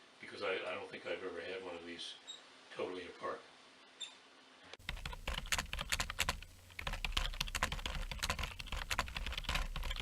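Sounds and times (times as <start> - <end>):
low steady hum: 4.8 - 10.0
typewriter keys clacking: 4.8 - 10.0.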